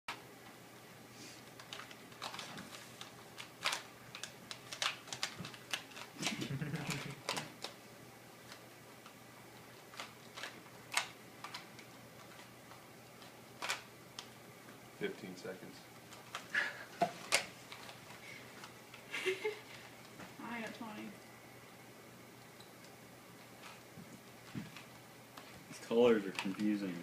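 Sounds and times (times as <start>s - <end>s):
puzzle cube clicking: 3.0s - 7.8s, 13.6s - 14.3s.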